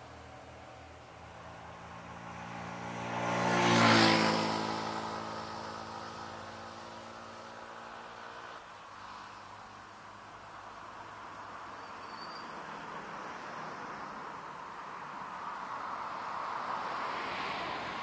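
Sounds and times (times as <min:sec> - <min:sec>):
vehicle passing by: 0:01.2 - 0:09.2.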